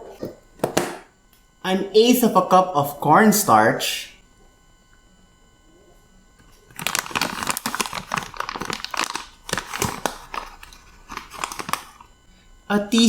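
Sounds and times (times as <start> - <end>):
plastic packaging crinkling: 6.5 - 12.2, 12.8 - 13.0.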